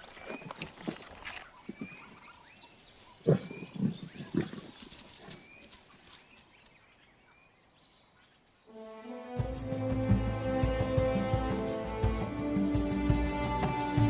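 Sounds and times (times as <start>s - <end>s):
bird chirping: 0.0s - 8.8s
lion growling: 3.2s - 5.4s.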